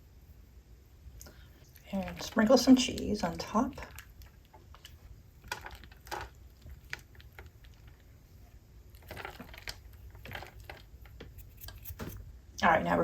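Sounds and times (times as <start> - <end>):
shredded cheese sprinkling: 1.7 - 8.2, 8.8 - 12.0.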